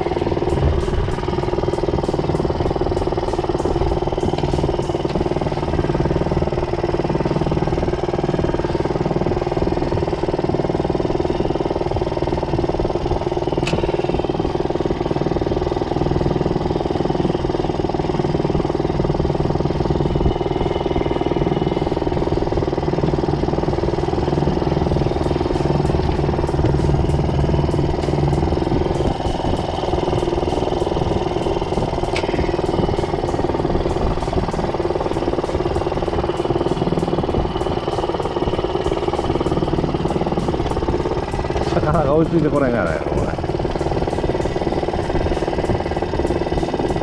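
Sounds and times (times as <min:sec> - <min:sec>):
outboard motor running: 0:00.0 - 0:47.0
sharp click: 0:13.6 - 0:14.2.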